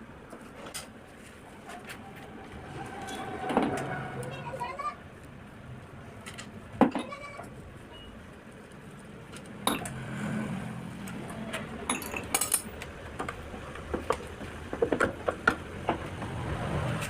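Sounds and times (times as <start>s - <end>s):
metal tools and parts clinking: 9.3s - 9.9s, 11.8s - 12.8s.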